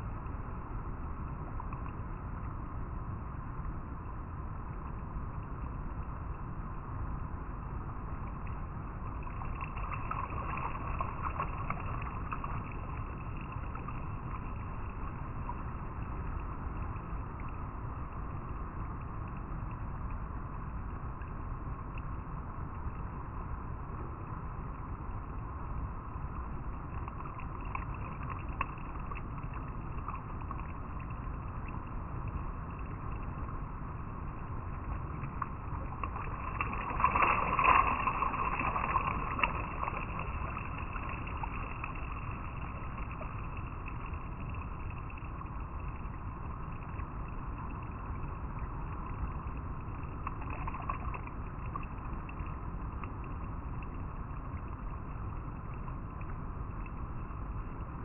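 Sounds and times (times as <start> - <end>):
river water rushing over rocks: 33.1 - 45.8
water splashing surge: 34.8 - 44.0.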